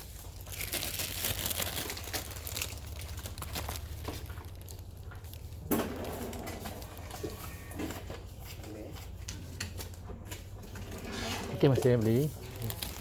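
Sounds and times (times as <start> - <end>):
packaging crinkling: 0.0 - 7.8, 11.7 - 13.0.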